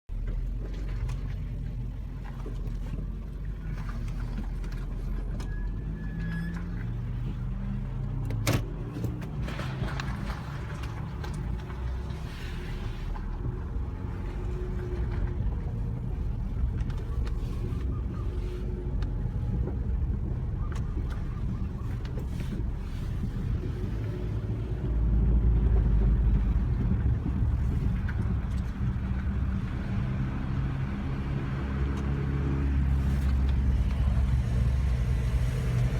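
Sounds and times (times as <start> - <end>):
car engine rumbling grind: 0.1 - 35.9.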